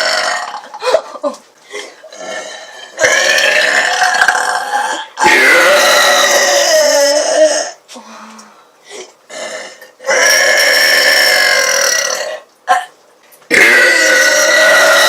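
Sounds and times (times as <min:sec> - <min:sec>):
woman belching: 0:00.0 - 0:00.8, 0:02.1 - 0:07.8, 0:09.3 - 0:12.9, 0:13.5 - 0:15.0.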